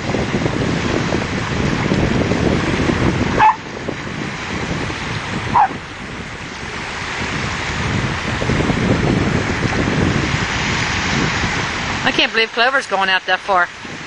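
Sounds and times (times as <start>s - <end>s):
surf: 0.0s - 14.0s
wind buffeting microphone: 0.0s - 14.0s
dog barking: 3.4s - 3.6s, 5.6s - 5.8s.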